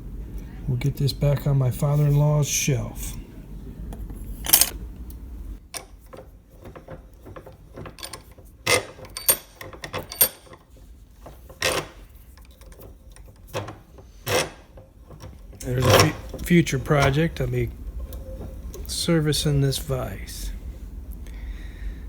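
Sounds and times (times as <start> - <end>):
metal tools rattling on workbench: 4.4 - 4.7, 6.6 - 10.7, 12.6 - 17.2.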